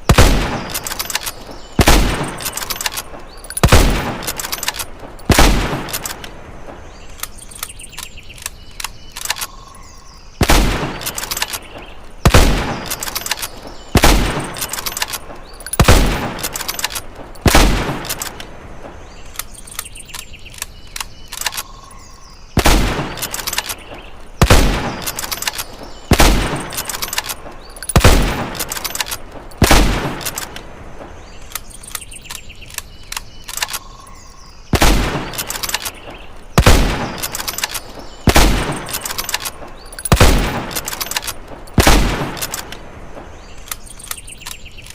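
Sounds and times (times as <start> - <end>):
rifle shots: 0.1 - 6.3, 10.4 - 18.5, 22.6 - 30.6, 34.7 - 42.8
faint metallic clicks: 0.6 - 1.6, 2.2 - 10.0, 11.0 - 13.8, 14.4 - 22.0, 23.2 - 24.3, 24.9 - 34.4, 35.3 - 44.9.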